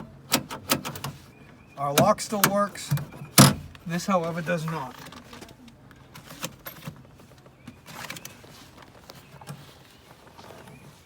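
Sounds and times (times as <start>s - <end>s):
car door handle clicks and rattles: 0.3s - 1.2s, 1.9s - 3.8s.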